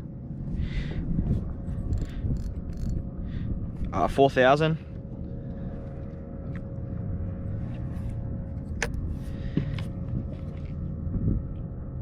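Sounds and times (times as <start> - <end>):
faint hum: 0.0 - 12.0
low rumble: 0.0 - 12.0
fishing gear clicking: 1.9 - 3.0.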